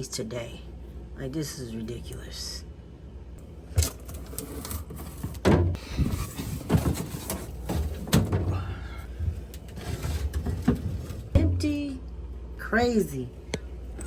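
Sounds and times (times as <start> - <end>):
containers knocking and clunking: 5.2 - 11.8.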